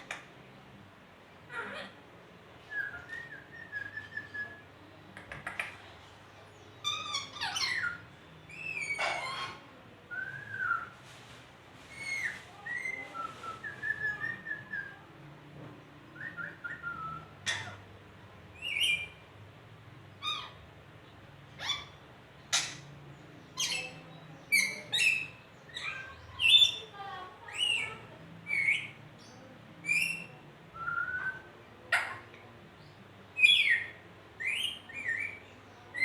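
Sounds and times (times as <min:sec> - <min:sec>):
parrot whistling and calling: 0:06.8 - 0:09.6, 0:18.6 - 0:19.2, 0:33.4 - 0:35.4.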